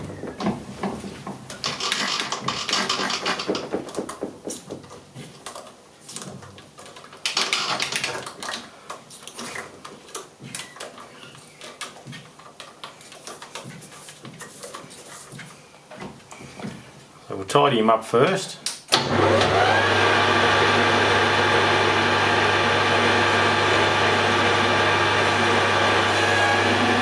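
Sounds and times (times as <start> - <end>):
metal lathe hissing cut: 21.4 - 27.0.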